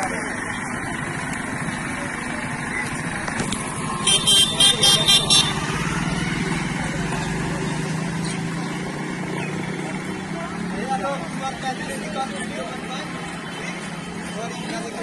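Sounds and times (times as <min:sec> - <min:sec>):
vehicle engine running: 0:00.0 - 0:15.0
vehicle horn beeps: 0:04.0 - 0:05.7.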